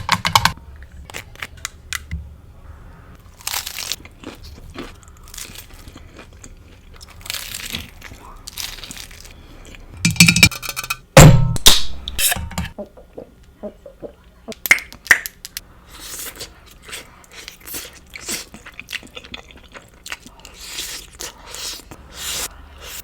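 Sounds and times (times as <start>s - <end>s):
crunchy bites and chewing: 3.3s - 9.9s.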